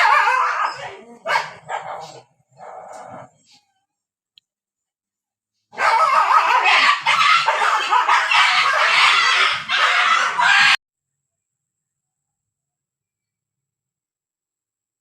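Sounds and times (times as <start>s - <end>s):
dogs fighting: 5.8s - 10.8s.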